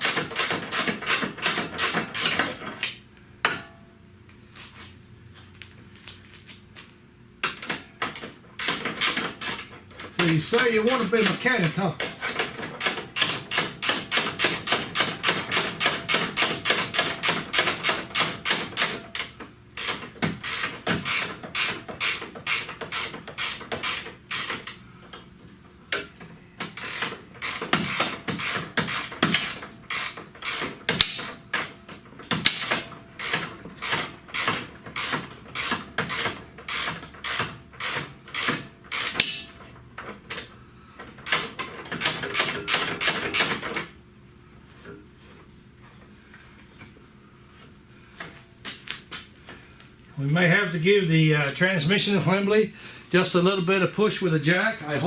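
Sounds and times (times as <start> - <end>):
ratchet wrench clicking: 0.0 - 2.5, 7.4 - 11.4, 12.0 - 24.8, 25.9 - 39.5.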